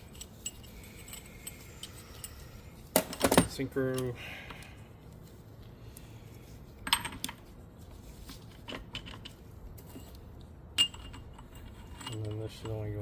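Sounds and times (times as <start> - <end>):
metal gear parts clinking: 0.0 - 4.2, 10.8 - 13.0.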